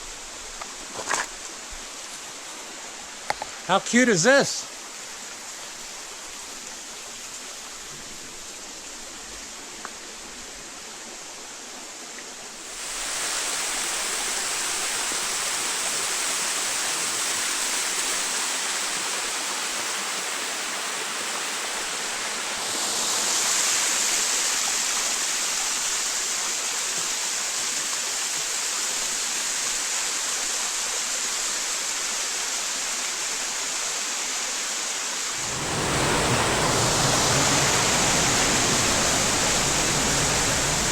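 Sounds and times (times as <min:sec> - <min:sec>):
water rushing over rocks: 0:12.6 - 0:26.6, 0:35.1 - 0:40.9.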